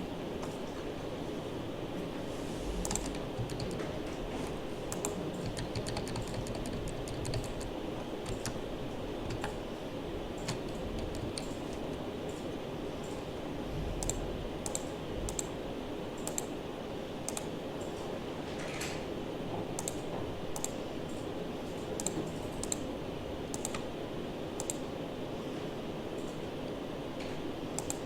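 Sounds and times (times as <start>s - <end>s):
steady low hum: 0.0s - 28.0s
mouse and keyboard clicks: 2.8s - 3.9s, 10.4s - 12.0s, 27.8s - 28.0s.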